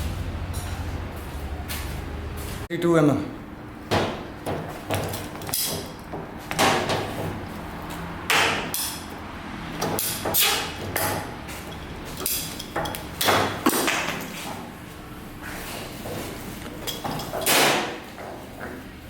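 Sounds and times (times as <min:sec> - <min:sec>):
hand tools knocking and clattering: 0:03.9 - 0:07.4, 0:09.7 - 0:14.7.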